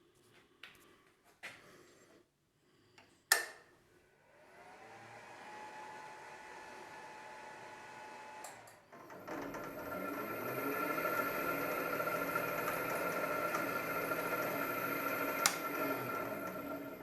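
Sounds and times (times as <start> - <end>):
drill press motor running: 4.4 - 17.0.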